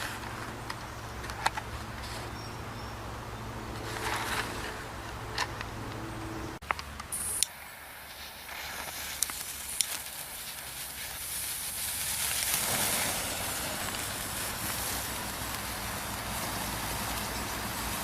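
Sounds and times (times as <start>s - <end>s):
sharp cracks: 6.6s - 18.0s
firework fizzing hiss: 7.0s - 18.0s.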